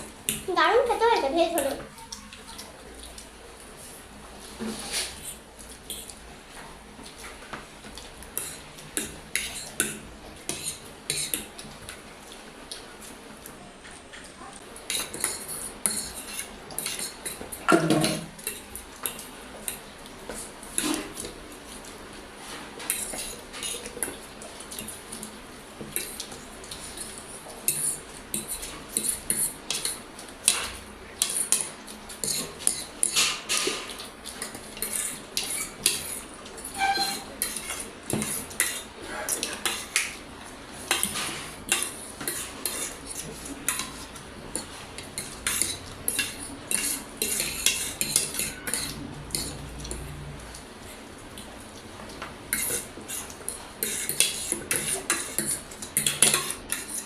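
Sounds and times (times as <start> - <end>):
cutlery clinking on plates: 8.4 - 11.6, 14.9 - 21.4, 27.0 - 40.1, 40.9 - 50.0, 52.5 - 57.0.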